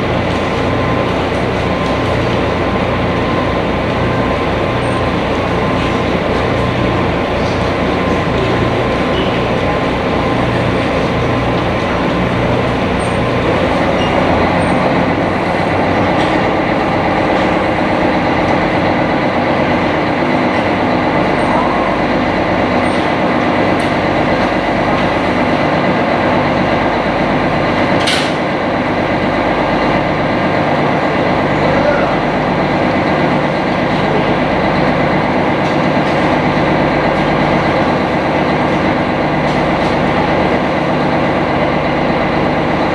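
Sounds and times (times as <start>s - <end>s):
boat engine droning: 0.0s - 19.4s.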